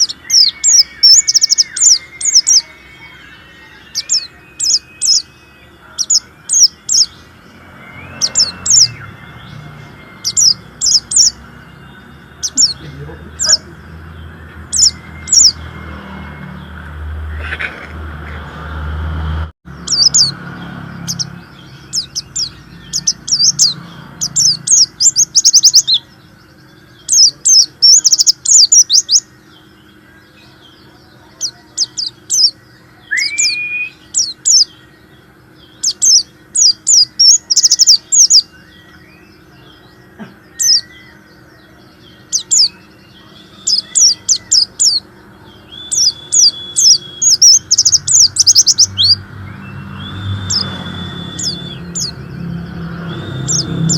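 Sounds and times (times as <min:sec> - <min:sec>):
rising bird whistle: 0:00.0 - 0:13.6, 0:14.2 - 0:16.6, 0:32.0 - 0:34.8, 0:45.7 - 0:53.9
small bird twittering song: 0:00.0 - 0:17.4, 0:19.7 - 0:53.9.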